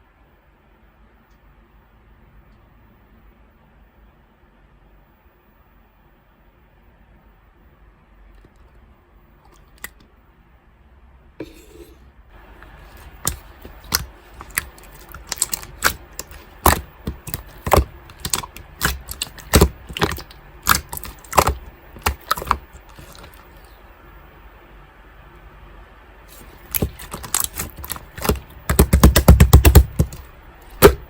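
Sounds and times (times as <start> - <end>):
slime popping and clicking: 13.0 - 23.4, 26.6 - 30.2.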